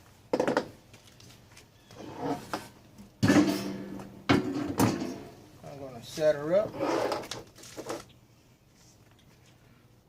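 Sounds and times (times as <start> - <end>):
metal smoker clunking: 3.2 - 5.5.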